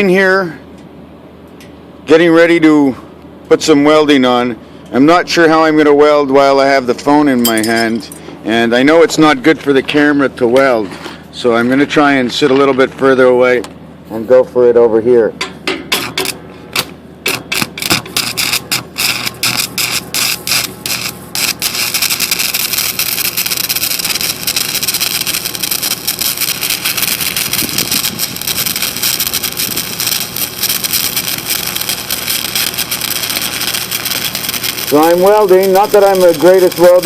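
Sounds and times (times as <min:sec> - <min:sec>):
arc welding crackle and sizzle: 0:15.9 - 0:37.0.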